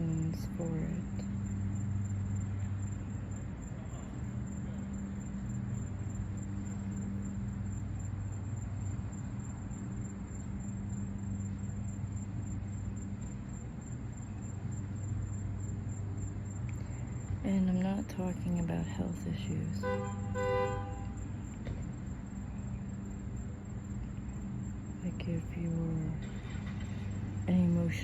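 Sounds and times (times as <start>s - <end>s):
low mechanical hum: 0.0s - 28.0s.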